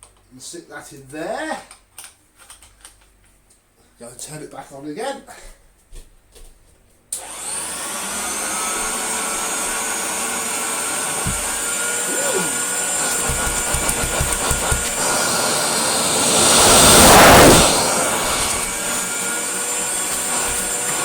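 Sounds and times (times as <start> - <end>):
vacuum cleaner motor whining: 7.2 - 21.0.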